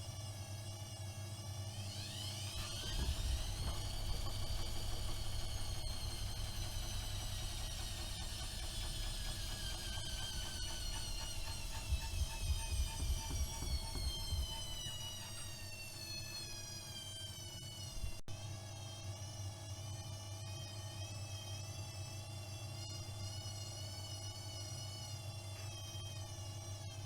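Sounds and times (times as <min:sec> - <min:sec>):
washing machine drum motor whining: 0:01.7 - 0:18.2
low rumble from drum: 0:02.6 - 0:15.2.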